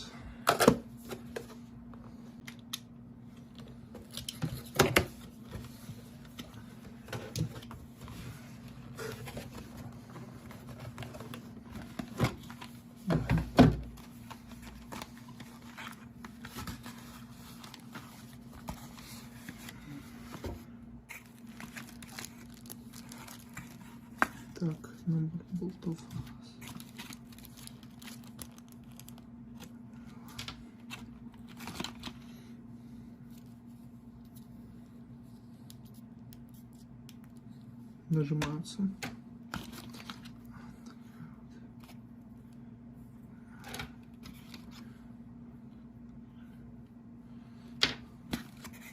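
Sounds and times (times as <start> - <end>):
cardboard box packaging rustling: 4.0 - 24.6, 26.6 - 29.7.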